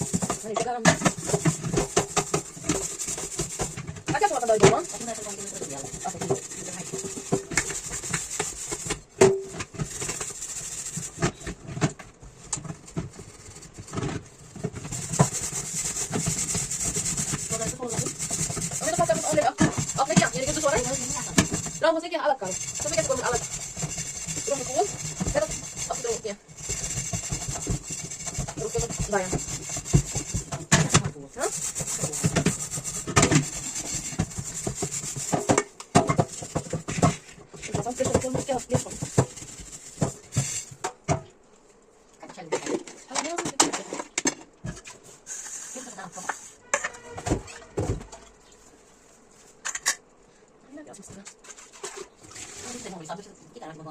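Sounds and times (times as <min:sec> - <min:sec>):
scrubbing dishes: 0:00.0 - 0:40.9.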